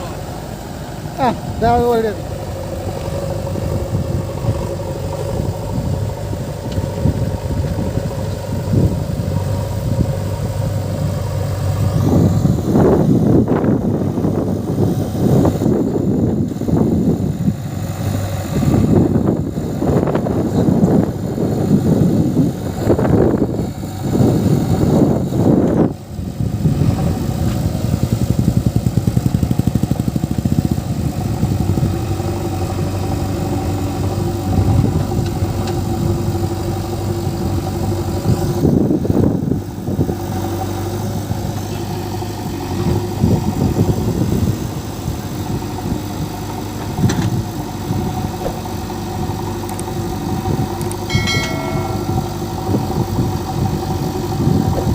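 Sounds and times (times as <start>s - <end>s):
diesel engine revving: 0.0s - 54.9s.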